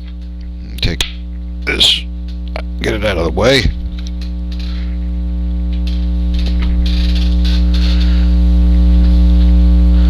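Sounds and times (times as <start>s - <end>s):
electrical mains hum: 0.0s - 10.0s
faint clicks and rustles: 3.8s - 8.3s.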